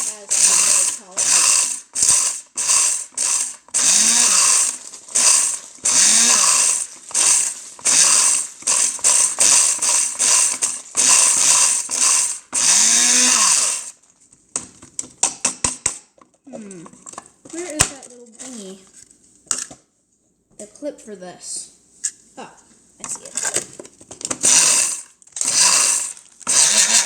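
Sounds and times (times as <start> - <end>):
electric blender grinding in bursts: 0.0 - 14.0, 24.3 - 27.0.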